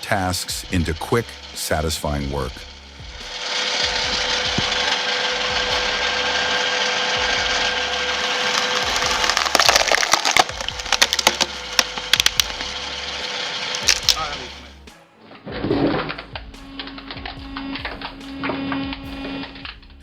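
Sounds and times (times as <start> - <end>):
log splitter humming: 0.0 - 20.0
wood cracking and splintering: 7.6 - 14.4.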